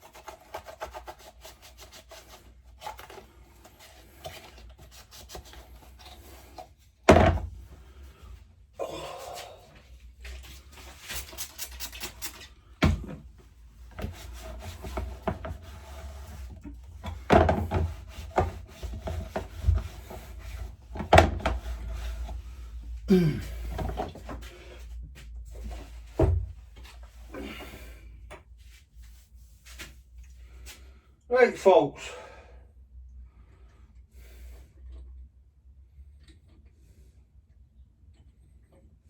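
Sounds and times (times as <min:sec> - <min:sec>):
rubbing and scraping: 0:00.0 - 0:08.3, 0:10.0 - 0:27.3.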